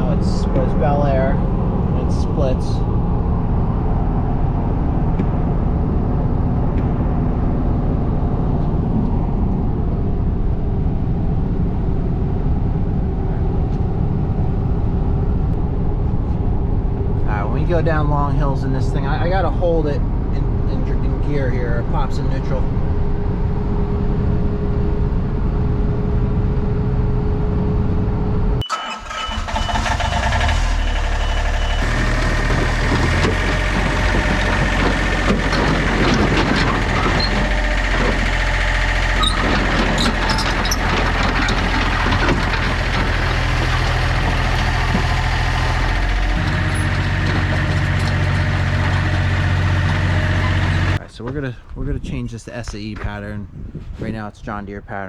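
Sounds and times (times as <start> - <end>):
diesel excavator engine: 0.0 - 51.7
truck engine and road noise: 0.0 - 55.0
metal clanks and clicks: 31.9 - 38.4, 39.1 - 45.2.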